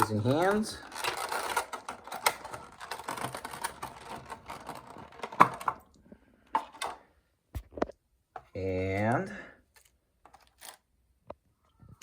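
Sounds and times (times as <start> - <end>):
cardboard packaging clicks and crinkles: 0.0 - 5.9, 9.7 - 10.9.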